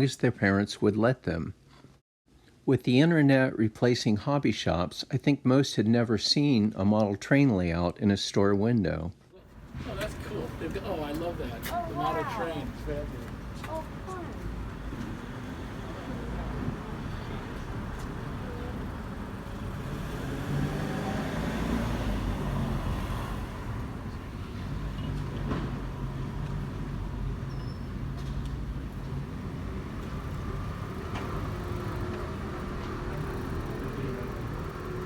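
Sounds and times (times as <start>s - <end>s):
vehicle engine rumbling: 12.3s - 35.0s.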